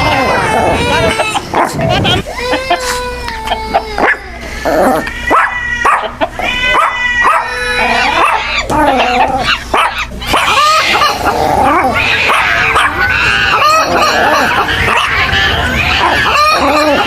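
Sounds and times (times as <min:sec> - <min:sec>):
dog bark ringtone: 0:05.3 - 0:08.6, 0:12.1 - 0:15.3.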